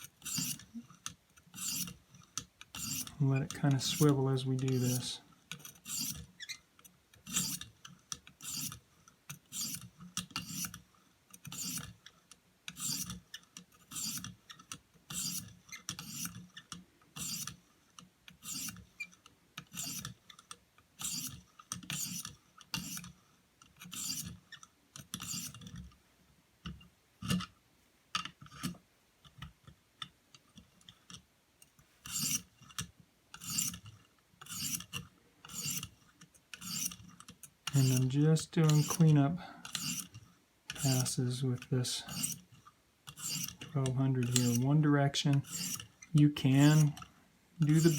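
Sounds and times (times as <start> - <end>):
sharpening stone scraping knife: 0.0 - 0.7, 1.5 - 2.0, 2.7 - 6.6, 7.2 - 7.7, 8.4 - 8.8, 9.5 - 10.8, 11.4 - 11.9, 12.7 - 13.2, 13.9 - 14.3, 15.1 - 16.4, 17.2 - 17.6, 18.4 - 18.8, 19.7 - 20.1, 21.0 - 23.1, 23.9 - 24.4, 25.2 - 25.6, 32.1 - 32.5, 33.4 - 33.8, 34.4 - 37.0, 37.7 - 42.5, 43.1 - 44.7, 45.3 - 47.0, 47.6 - 47.9.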